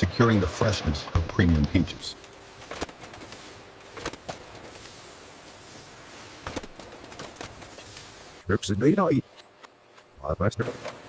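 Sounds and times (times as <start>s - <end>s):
machinery hissing: 2.0s - 8.9s.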